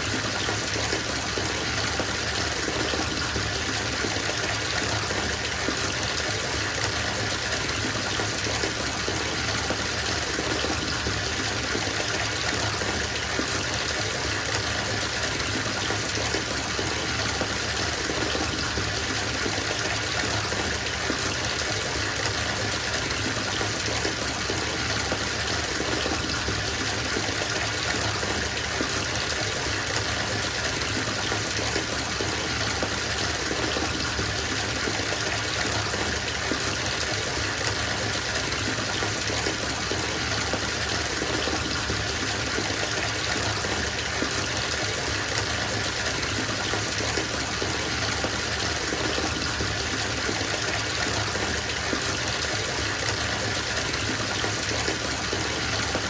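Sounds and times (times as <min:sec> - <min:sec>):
tap water filling bathtub: 0:00.0 - 0:56.0.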